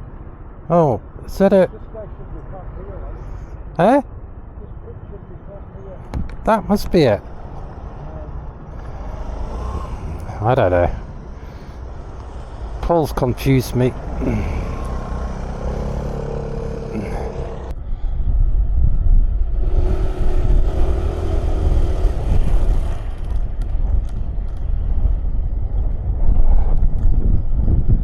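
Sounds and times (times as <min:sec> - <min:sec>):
wind rumble on microphone: 0:07.2 - 0:12.9, 0:17.1 - 0:28.0
scooter engine running: 0:14.0 - 0:17.7.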